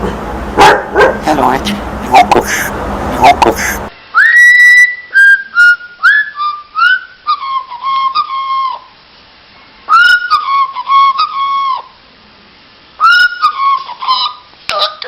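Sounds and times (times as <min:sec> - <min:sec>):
parrot whistling a tune: 0:04.1 - 0:08.9, 0:09.9 - 0:12.0, 0:13.0 - 0:14.4.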